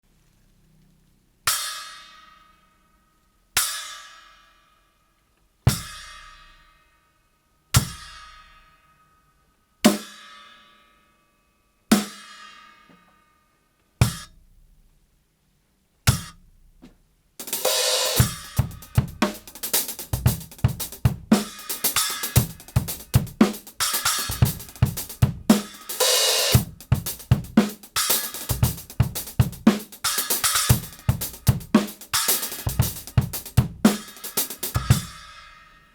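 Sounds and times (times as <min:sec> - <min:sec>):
drum kit groove: 0:05.7 - 0:06.5, 0:07.8 - 0:08.3, 0:11.9 - 0:12.3, 0:14.0 - 0:14.8, 0:16.1 - 0:35.8.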